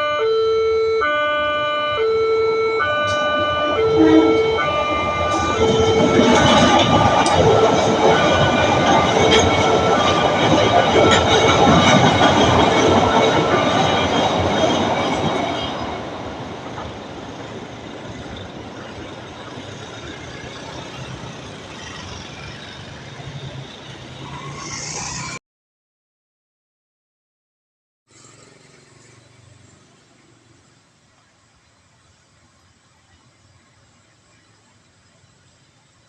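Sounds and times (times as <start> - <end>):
train wheels rumbling on rails: 2.9 - 25.2
steady squealing tones: 3.0 - 15.9.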